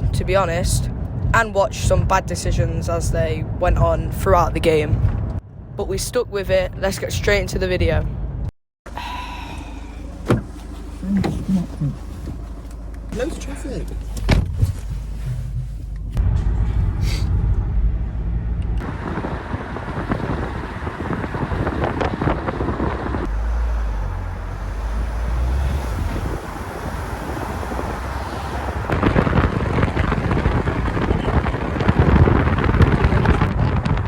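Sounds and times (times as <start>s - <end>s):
wind buffeting microphone: 0.0s - 8.4s, 18.8s - 23.5s, 24.6s - 34.0s
road traffic rumble: 0.0s - 34.0s.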